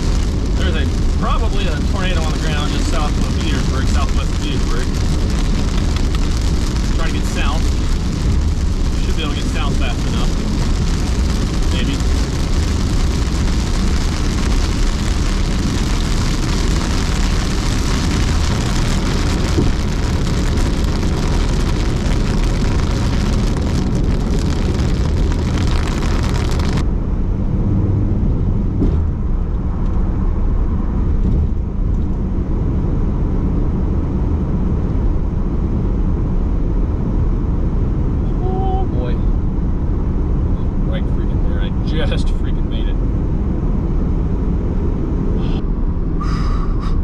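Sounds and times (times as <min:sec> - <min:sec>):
loud rushing hiss: 0:00.0 - 0:15.7
road and engine rumble: 0:00.0 - 0:47.0.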